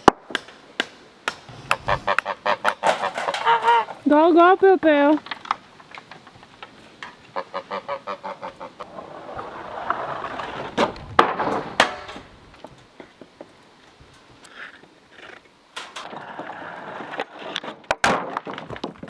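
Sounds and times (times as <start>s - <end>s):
brick sliding down wooden plank: 1.4s - 4.0s.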